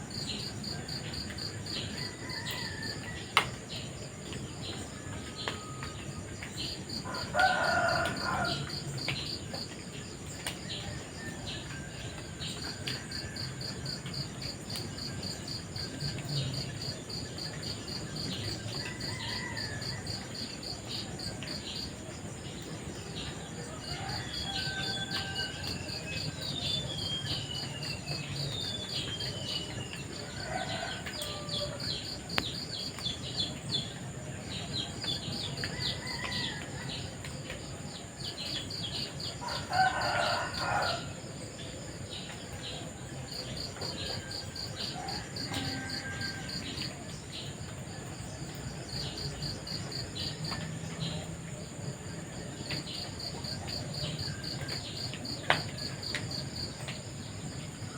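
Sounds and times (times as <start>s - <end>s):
rooster crowing: 1.9s - 3.2s, 7.0s - 8.8s, 18.8s - 20.4s, 23.7s - 26.2s, 30.2s - 32.3s, 39.4s - 41.2s, 43.6s - 47.0s.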